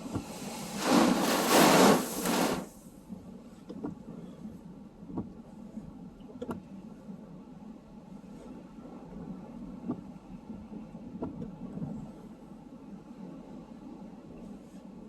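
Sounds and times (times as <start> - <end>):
surf washing: 0.0 - 2.7
wave crashing against seawall: 0.0 - 2.7.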